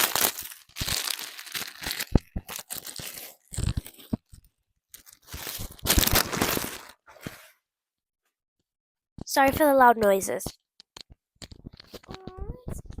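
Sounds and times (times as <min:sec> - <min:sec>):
packaging tearing and crinkling: 0:00.0 - 0:07.0.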